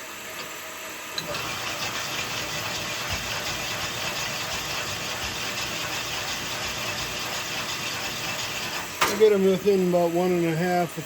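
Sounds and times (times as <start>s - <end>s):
honing machine running: 1.2s - 8.8s.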